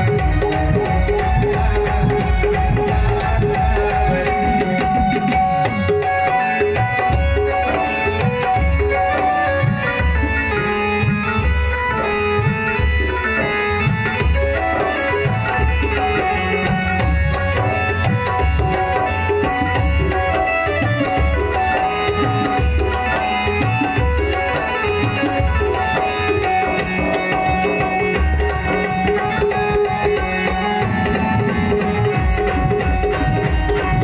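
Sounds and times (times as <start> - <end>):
deep beat: 0.0 - 5.8
sustained melody lines: 0.0 - 34.0
tabla rhythm: 0.0 - 34.0.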